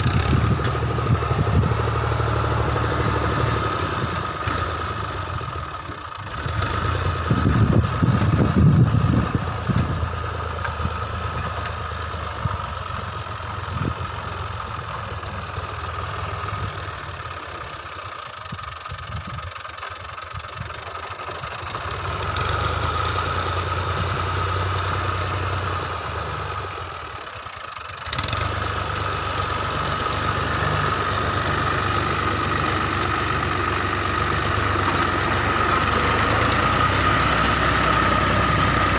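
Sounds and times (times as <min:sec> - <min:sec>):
loud low rumble: 0:00.0 - 0:05.6, 0:06.7 - 0:11.3
diesel tractor engine running: 0:00.0 - 0:38.9.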